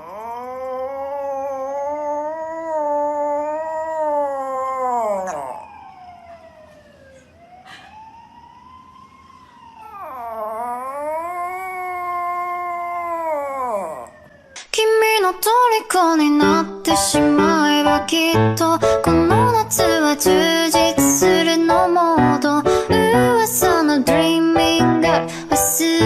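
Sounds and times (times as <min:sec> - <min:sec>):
dog howling: 0:00.0 - 0:06.1, 0:09.8 - 0:14.4.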